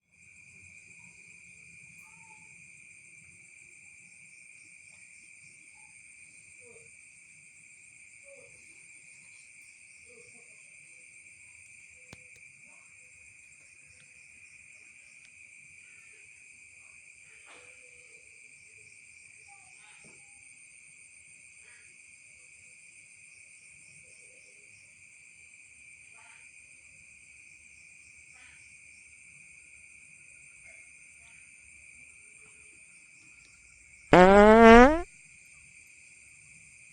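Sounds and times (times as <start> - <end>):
short animal calls: 34.2 - 35.0.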